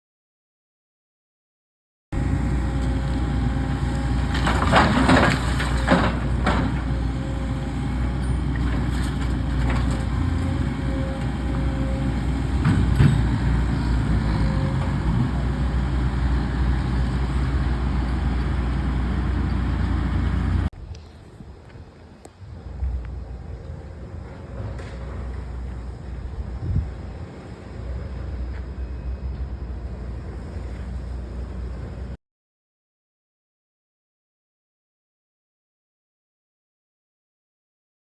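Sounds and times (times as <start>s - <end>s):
heavy machinery engine running: 2.2s - 20.7s
wood cracking and crunching: 3.9s - 7.4s.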